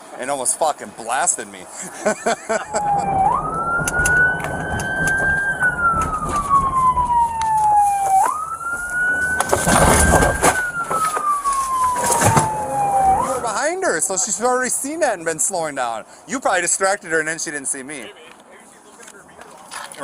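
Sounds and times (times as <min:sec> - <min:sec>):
police siren wailing: 0:02.5 - 0:14.2
burst of loud noise: 0:02.7 - 0:13.5.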